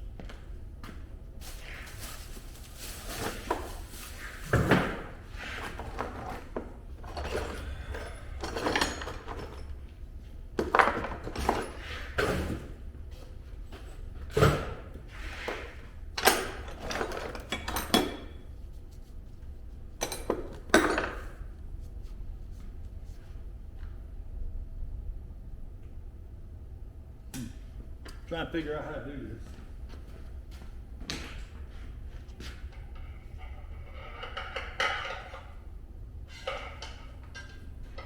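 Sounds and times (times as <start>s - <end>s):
metal tools clanking and clattering: 5.6s - 10.0s, 10.6s - 12.6s, 16.2s - 18.4s, 20.0s - 21.3s, 32.6s - 35.6s, 36.4s - 38.0s
low steady hum: 15.8s - 38.0s.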